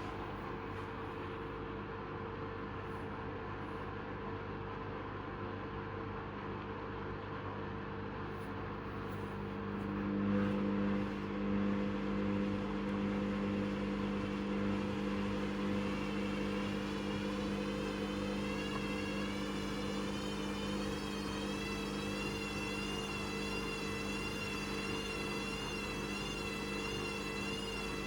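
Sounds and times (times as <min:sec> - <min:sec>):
washing machine motor hum: 0:08.8 - 0:28.0
wavering high whine: 0:08.9 - 0:28.0.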